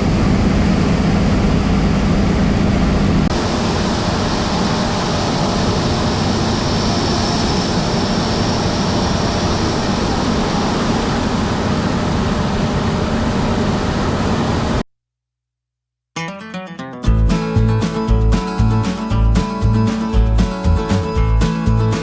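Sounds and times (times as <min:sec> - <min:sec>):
heavy farm machinery running: 0:00.0 - 0:14.8.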